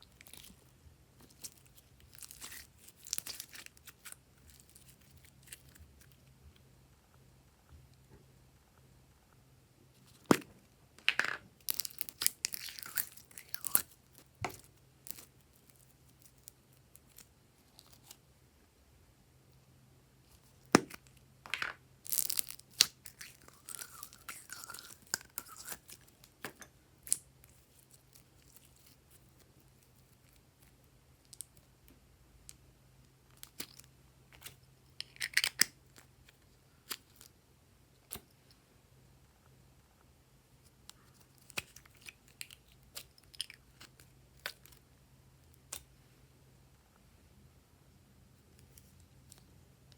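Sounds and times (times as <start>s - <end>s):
hands squishing slime: 1.2s - 5.7s.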